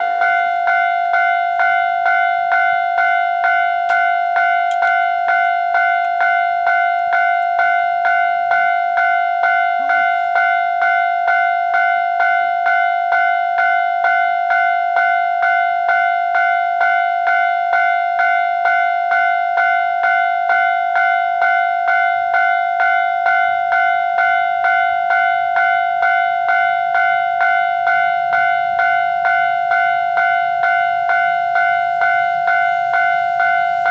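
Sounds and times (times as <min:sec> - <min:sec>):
level-crossing alarm ringing: 0:00.0 - 0:33.9.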